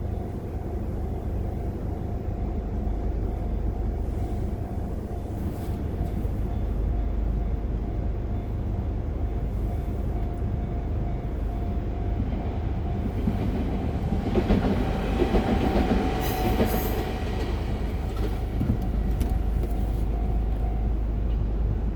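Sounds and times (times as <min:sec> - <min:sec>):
electric train rail rumble: 0:00.0 - 0:21.9
train wheel clatter: 0:13.0 - 0:20.8.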